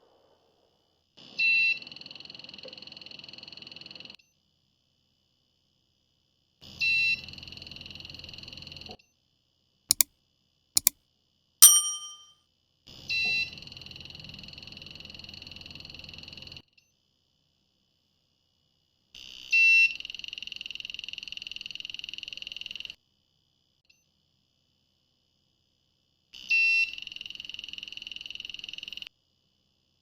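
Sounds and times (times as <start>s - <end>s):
short ring: 11.6s - 12.3s.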